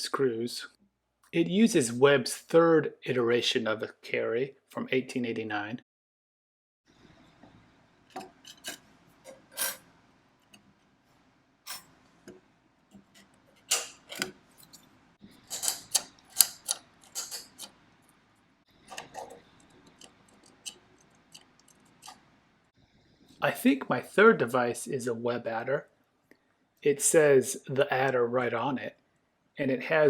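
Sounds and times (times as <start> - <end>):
adding machine clicking: 15.5 - 17.8.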